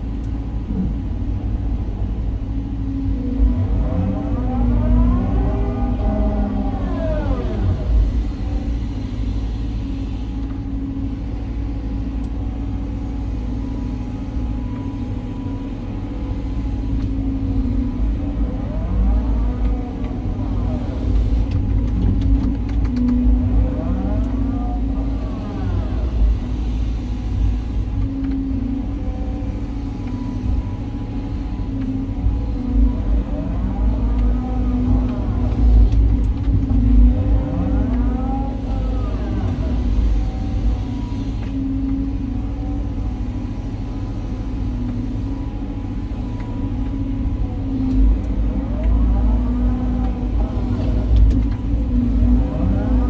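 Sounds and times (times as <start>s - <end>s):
excavator engine and hydraulics: 0.0s - 53.0s.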